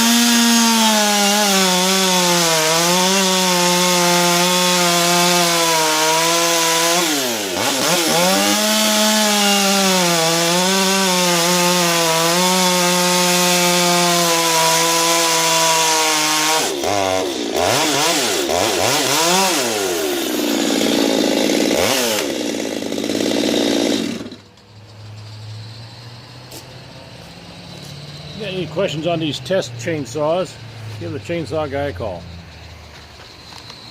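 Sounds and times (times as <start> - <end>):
chainsaw revving: 0.0 - 24.5
chainsaw cutting log: 0.0 - 24.6.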